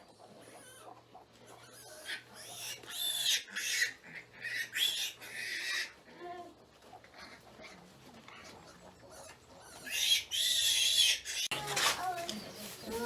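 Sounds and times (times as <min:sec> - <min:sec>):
piglets squealing: 0:00.0 - 0:06.0, 0:08.6 - 0:11.6.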